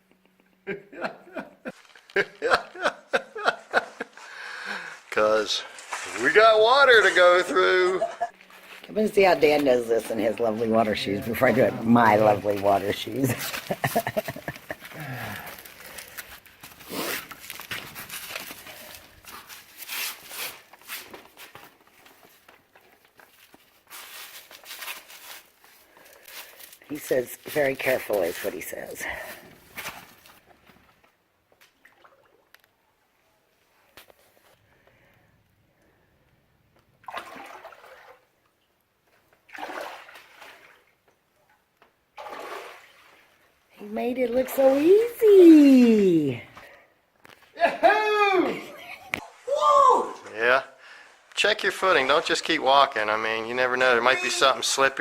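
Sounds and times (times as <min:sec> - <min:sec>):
footsteps splashing in water: 0:05.7 - 0:06.4, 0:37.0 - 0:38.2, 0:39.5 - 0:40.9, 0:42.2 - 0:43.4
rustling: 0:08.3 - 0:31.0.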